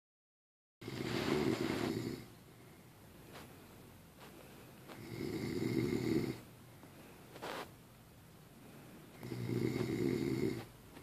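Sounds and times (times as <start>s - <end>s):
snore: 0.8s - 2.3s, 5.0s - 6.4s, 9.2s - 10.7s.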